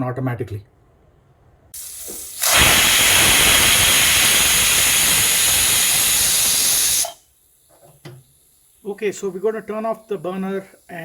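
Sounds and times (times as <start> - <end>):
pressure cooker whistling: 1.8 - 7.3.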